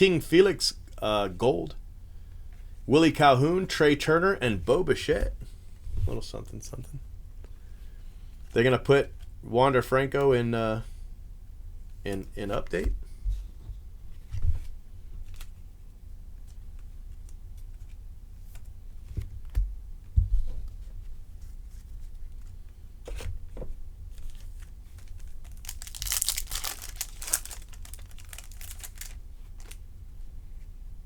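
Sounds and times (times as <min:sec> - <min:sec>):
foil wrapper tearing: 0:24.2 - 0:29.8.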